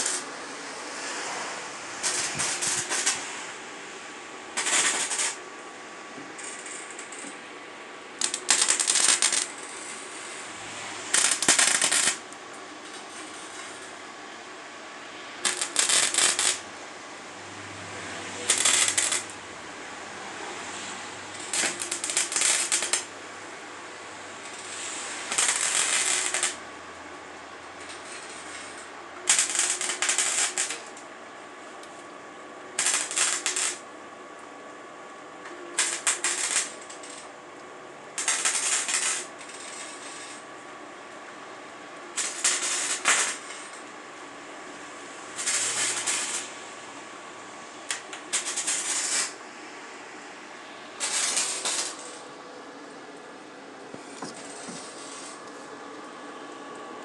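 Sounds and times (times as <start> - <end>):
welder crackling bursts: 0.0 - 0.4, 2.0 - 3.5, 4.5 - 5.4, 8.2 - 12.5, 15.4 - 16.7, 17.5 - 20.1, 21.1 - 23.2, 24.4 - 26.7, 27.8 - 31.0, 32.7 - 33.9, 35.7 - 37.3, 38.1 - 40.5, 42.1 - 43.9, 45.2 - 46.8, 47.8 - 49.5, 51.0 - 52.3
steady welder hum: 0.0 - 57.0.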